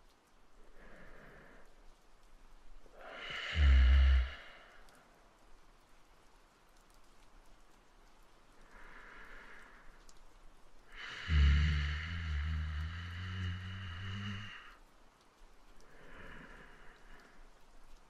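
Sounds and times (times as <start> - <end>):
faint rain patter: 0.0 - 18.0
man breathing deeply: 2.9 - 5.2, 10.9 - 14.8, 15.9 - 17.4.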